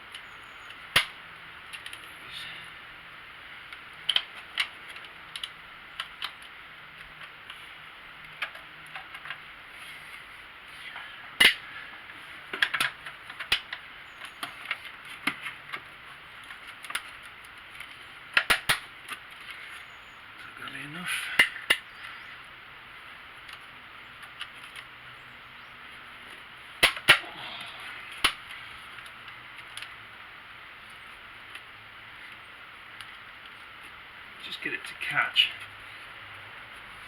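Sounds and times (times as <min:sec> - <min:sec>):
sharp metal clicks and knocks: 0:12.5 - 0:19.3.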